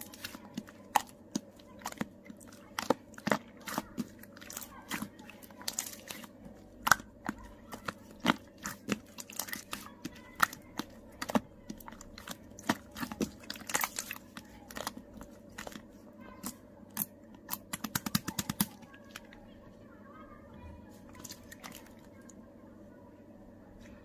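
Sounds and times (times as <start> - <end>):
slime popping and crackling: 0.0 - 19.2.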